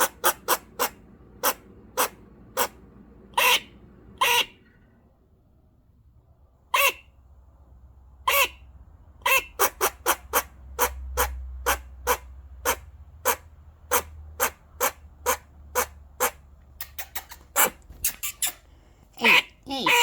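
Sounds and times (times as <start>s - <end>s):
squirrel alarm barks: 0.0s - 4.6s, 6.7s - 7.2s, 8.3s - 8.6s, 9.2s - 16.4s, 19.2s - 20.0s.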